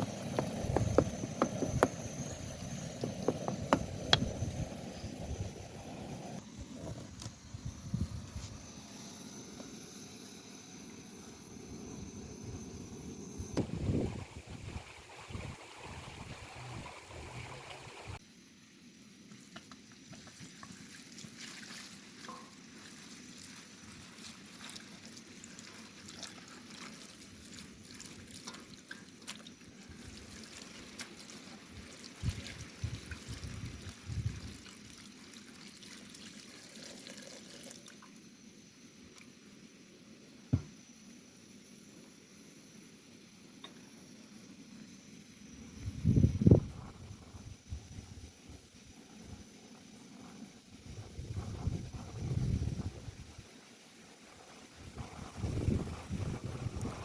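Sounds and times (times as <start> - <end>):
dull knocks: 40.5 - 40.7.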